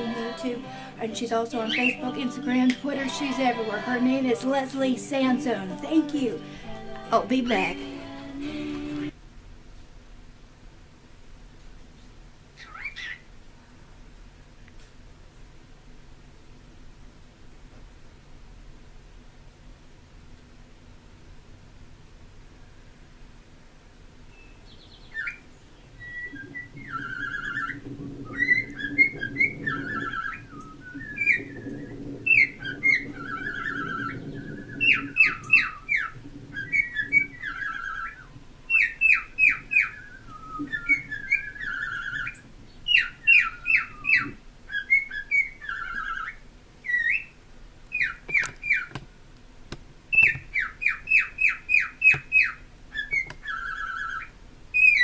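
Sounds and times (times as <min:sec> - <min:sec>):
cockatiel whistling and chirping: 0:01.7 - 0:02.0, 0:12.6 - 0:13.2, 0:24.4 - 0:25.4, 0:26.0 - 0:48.9, 0:50.1 - 0:55.0.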